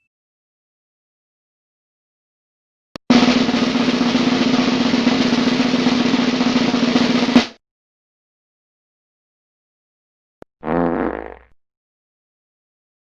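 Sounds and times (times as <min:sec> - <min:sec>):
snare drum roll: 0:03.1 - 0:07.6.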